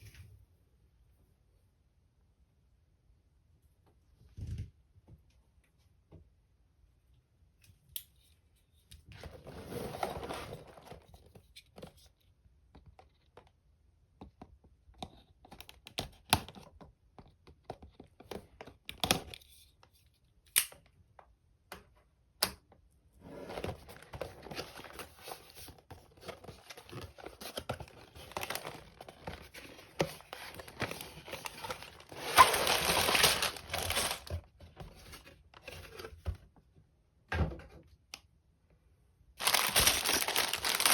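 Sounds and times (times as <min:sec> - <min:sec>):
packaging tearing and crinkling: 0:26.5 - 0:34.4, 0:39.4 - 0:40.9.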